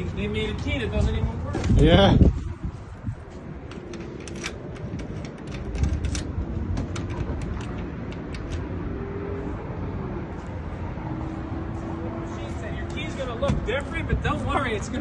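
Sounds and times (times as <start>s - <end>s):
keys clicking and clinking: 3.7s - 8.6s.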